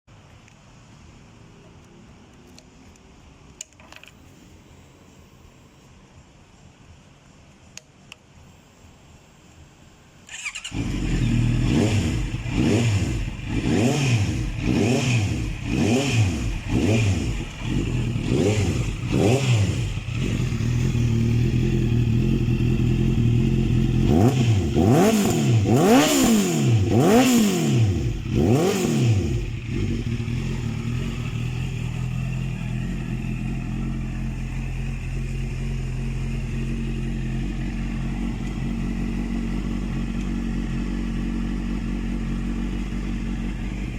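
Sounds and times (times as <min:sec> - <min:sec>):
motorcycle engine revving and idling: 0:10.3 - 0:43.9.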